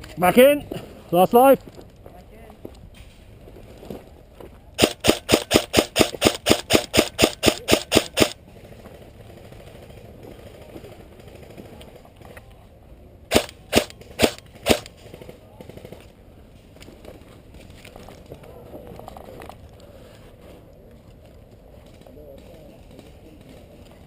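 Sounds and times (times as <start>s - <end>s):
airsoft gun shots: 4.8s - 8.4s, 13.3s - 15.0s.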